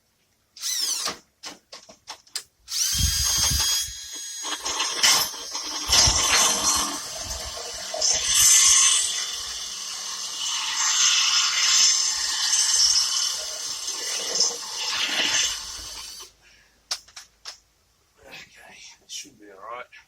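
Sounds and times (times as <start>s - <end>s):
electric drill cutting: 0.6s - 1.2s, 2.7s - 16.3s.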